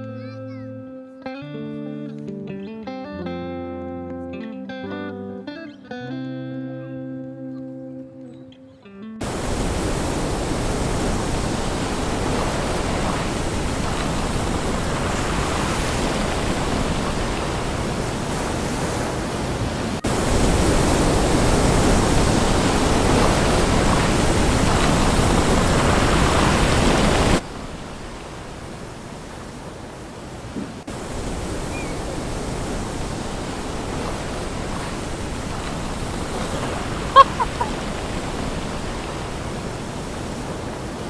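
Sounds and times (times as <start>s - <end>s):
sea surf washing on shore: 9.2s - 41.0s
wind buffeting microphone: 9.2s - 41.0s.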